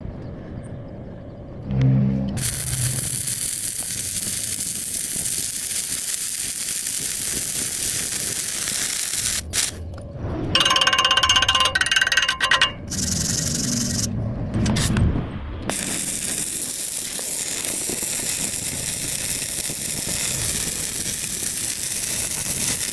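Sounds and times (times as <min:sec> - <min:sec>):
arc welding crackle: 0:02.4 - 0:09.8, 0:12.9 - 0:14.1, 0:15.7 - 0:22.9.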